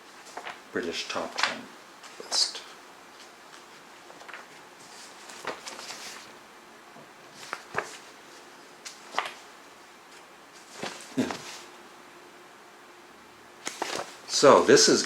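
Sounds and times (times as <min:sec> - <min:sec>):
magazine pages turning: 0:00.1 - 0:06.3, 0:07.3 - 0:09.5, 0:10.1 - 0:11.7, 0:13.6 - 0:14.2.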